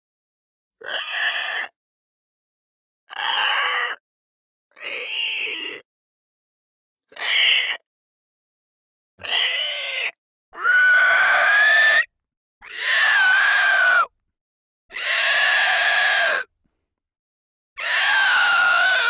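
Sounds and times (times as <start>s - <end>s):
monster screeching: 12.8s - 14.1s, 15.0s - 16.4s, 17.8s - 19.0s.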